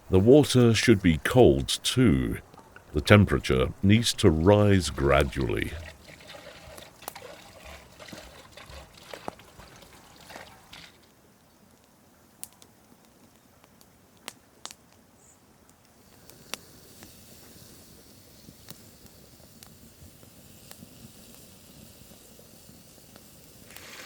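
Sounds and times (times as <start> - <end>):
water trickling into a cauldron: 3.6 - 11.1, 16.3 - 24.0.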